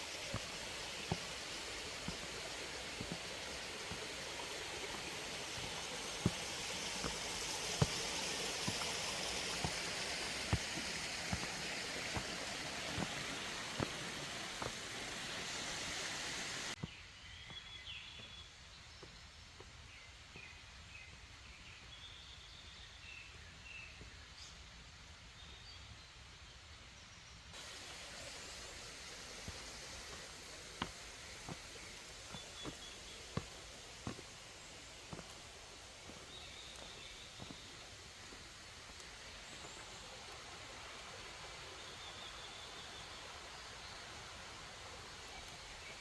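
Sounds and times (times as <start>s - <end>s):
stream running: 0.0s - 16.9s, 27.6s - 46.0s.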